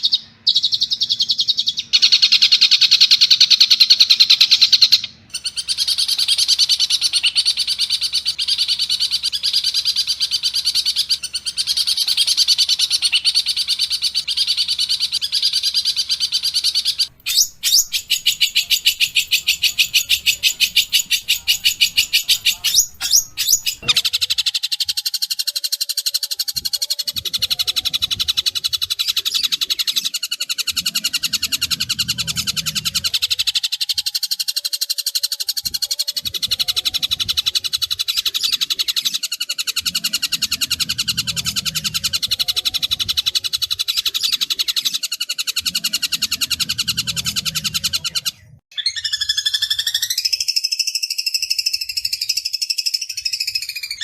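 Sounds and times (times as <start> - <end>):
bird call with pitched notes: 0.0 - 54.0
bird rattling trill: 5.3 - 24.7.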